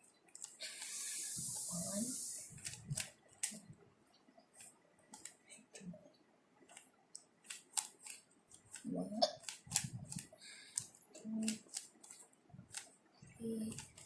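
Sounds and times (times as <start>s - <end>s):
puzzle cube clicking: 0.4s - 3.6s, 7.5s - 12.9s
brief hiss: 0.6s - 2.6s.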